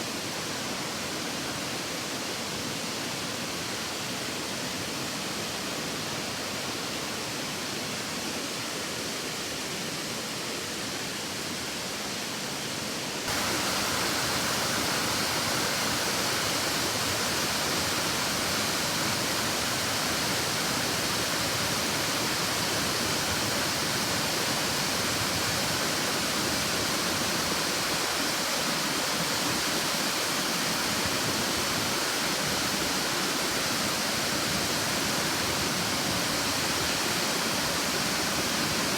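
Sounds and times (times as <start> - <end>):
waterfall rushing: 13.2 - 38.9.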